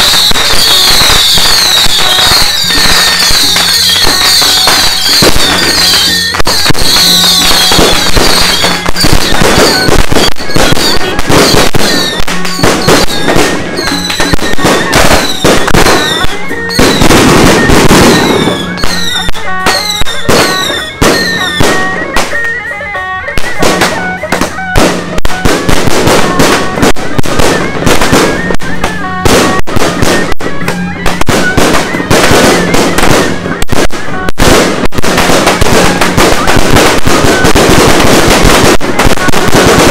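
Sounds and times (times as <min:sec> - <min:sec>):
firecrackers and fireworks bangs: 0:00.0 - 0:39.9
music with held tones: 0:00.0 - 0:39.9
whistles falling in pitch: 0:18.0 - 0:24.8.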